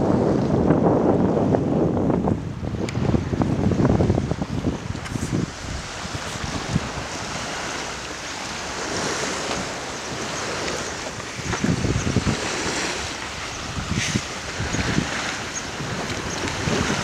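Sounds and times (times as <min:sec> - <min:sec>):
sea waves rushing: 0:00.0 - 0:17.0
wind buffeting microphone: 0:00.0 - 0:17.0.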